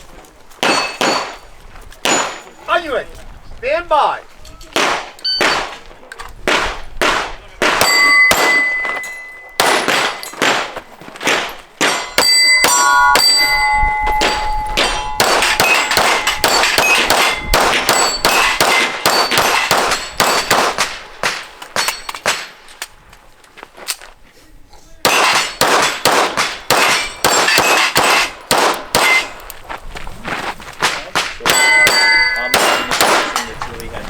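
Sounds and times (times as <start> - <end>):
pistol shots: 2.0 - 2.5, 4.8 - 5.8, 6.4 - 9.0, 9.6 - 13.0, 14.8 - 22.5, 25.0 - 29.4, 30.8 - 33.5
steel plates clanging: 7.8 - 10.8, 11.8 - 22.8, 31.5 - 33.8.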